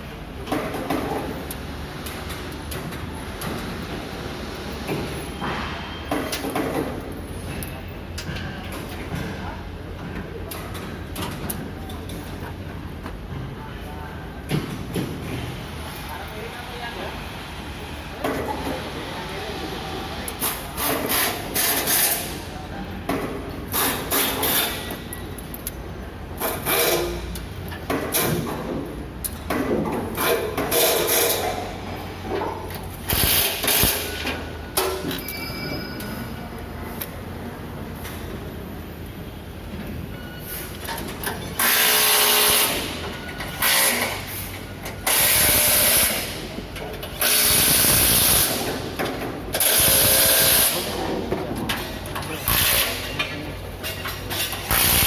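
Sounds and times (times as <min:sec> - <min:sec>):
factory background hum: 0:00.0 - 0:55.0
pneumatic air tool bursts: 0:33.0 - 0:34.3, 0:41.6 - 0:46.4, 0:47.2 - 0:48.9, 0:49.5 - 0:50.8, 0:54.4 - 0:55.0.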